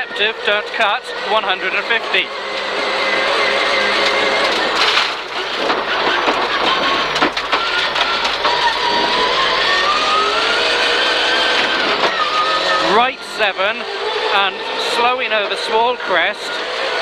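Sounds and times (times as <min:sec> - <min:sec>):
car engine revving: 0:00.0 - 0:17.0
sharp clicks and knocks: 0:03.8 - 0:10.0.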